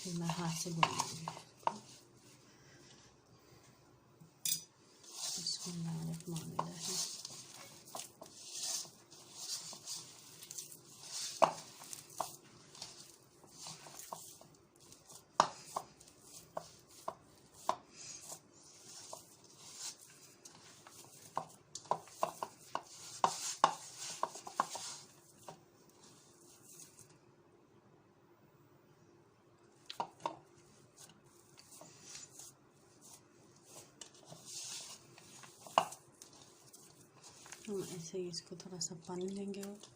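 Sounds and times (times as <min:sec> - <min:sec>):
gritty scraping in a bowl: 0:04.5 - 0:27.0, 0:30.7 - 0:38.5.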